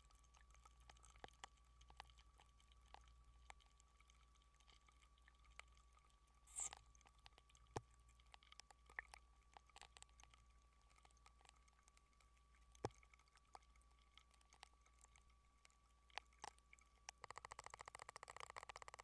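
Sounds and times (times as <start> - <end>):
faint clicks: 6.6 - 19.0.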